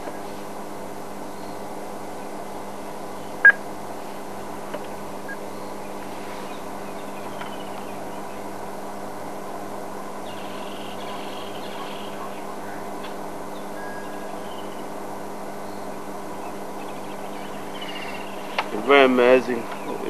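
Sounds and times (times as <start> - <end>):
low hum: 0.0 - 18.9.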